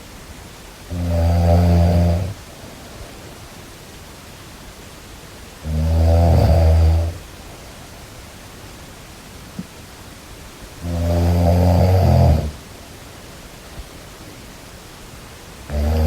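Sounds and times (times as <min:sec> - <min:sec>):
steady hiss: 0:00.0 - 0:16.0
low-pitched snoring: 0:00.9 - 0:02.4, 0:05.6 - 0:07.2, 0:10.8 - 0:12.6, 0:15.7 - 0:16.0.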